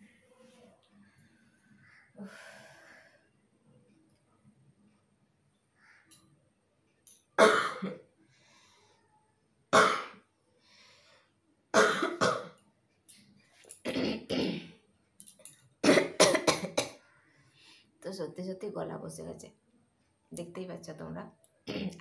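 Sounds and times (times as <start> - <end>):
person coughing hoarsely: 7.4 - 8.0, 11.8 - 12.5, 15.8 - 17.0.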